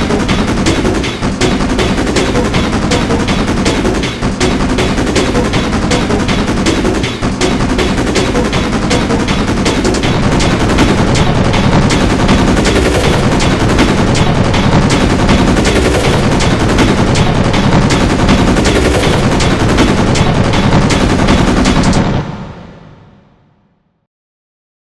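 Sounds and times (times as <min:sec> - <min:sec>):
rapid sharp hits: 0:00.0 - 0:23.2.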